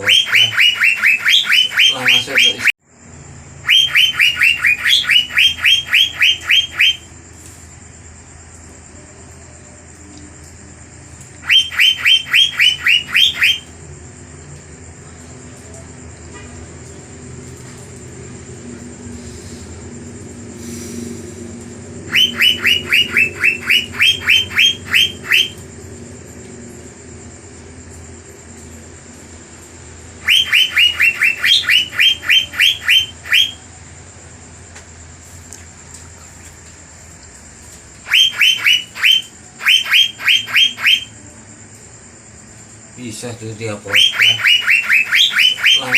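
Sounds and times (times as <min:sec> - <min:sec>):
bird calling sharp repeated notes: 0:00.0 - 0:02.7, 0:03.6 - 0:07.2, 0:11.3 - 0:13.8, 0:22.0 - 0:25.6, 0:30.2 - 0:33.6, 0:38.0 - 0:41.2, 0:43.9 - 0:45.9
steady low hum: 0:00.0 - 0:45.9.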